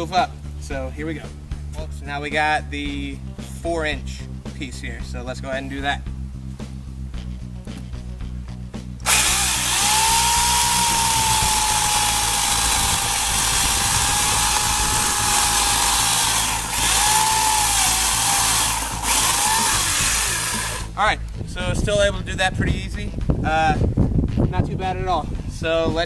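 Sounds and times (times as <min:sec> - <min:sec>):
electric chainsaw cutting branch: 0:09.0 - 0:21.0.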